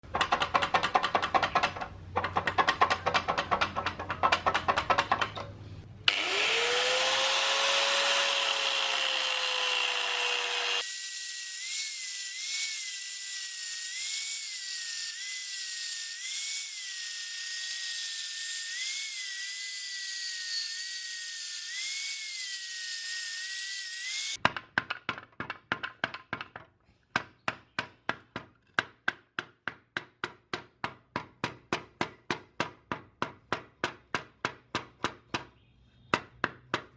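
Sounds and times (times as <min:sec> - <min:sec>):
rapid hammer strikes: 0:00.1 - 0:05.4
power tool whining: 0:06.1 - 0:24.4.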